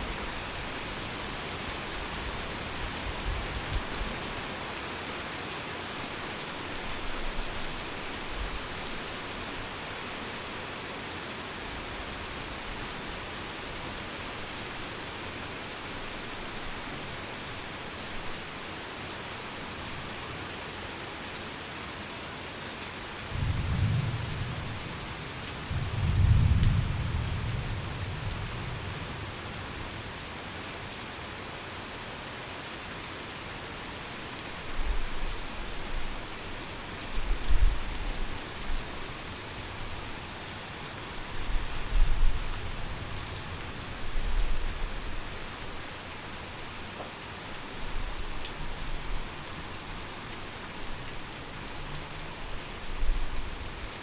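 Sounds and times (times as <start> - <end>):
heavy rain falling: 0.0 - 54.0
thunder rumbling and cracking: 23.4 - 29.1.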